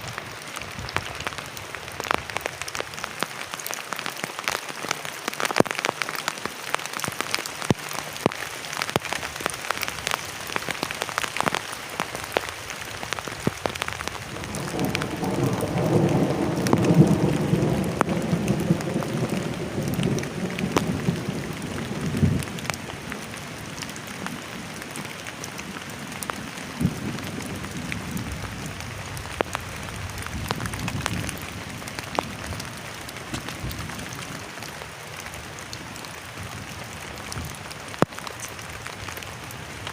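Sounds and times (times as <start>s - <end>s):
heavy rain on plastic tarp: 0.0s - 39.9s
low rumble of thunder: 14.2s - 22.7s, 26.6s - 34.4s.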